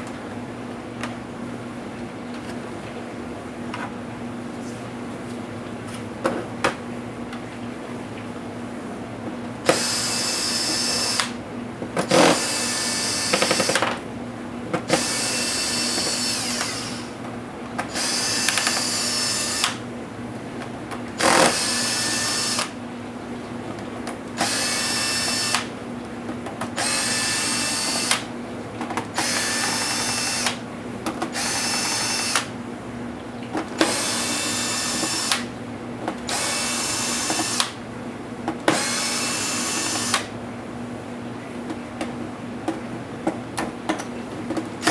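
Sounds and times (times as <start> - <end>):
electric screwdriver motor whining: 9.7 - 11.3, 12.1 - 13.8, 14.9 - 17.1, 17.9 - 19.8, 21.2 - 22.8, 24.4 - 25.7, 26.8 - 28.3, 29.2 - 30.6, 31.4 - 32.5, 33.8 - 35.5, 36.3 - 37.7, 38.7 - 40.3.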